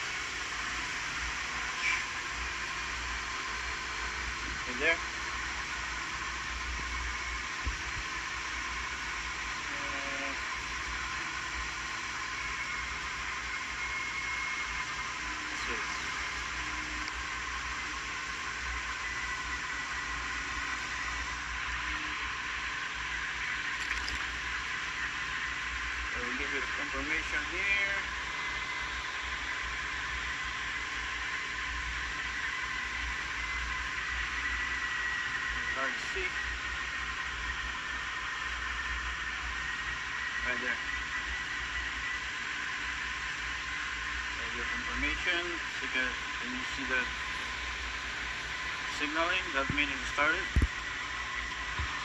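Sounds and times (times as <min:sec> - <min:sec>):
single click: 0:23.8 - 0:24.3.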